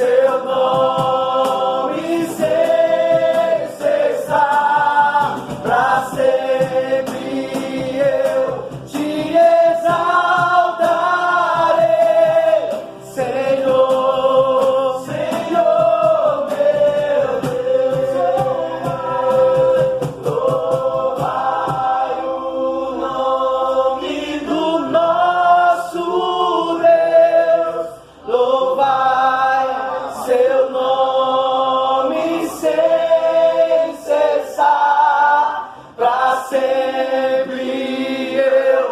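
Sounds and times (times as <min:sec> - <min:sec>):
group of voices singing: 0:00.0 - 0:38.9
singers breathing: 0:28.0 - 0:28.3, 0:35.6 - 0:36.0.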